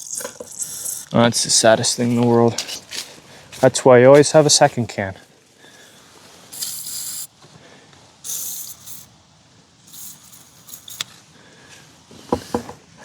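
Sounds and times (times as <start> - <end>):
aerosol can spraying: 0.0 - 1.1, 6.5 - 7.3, 8.2 - 9.1, 9.9 - 11.2.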